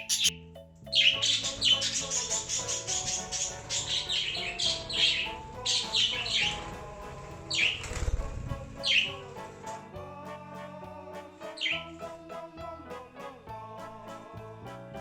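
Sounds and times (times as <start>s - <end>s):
budgie chirping: 0.0s - 6.7s
background music: 0.0s - 15.0s
low rumble: 1.6s - 11.1s.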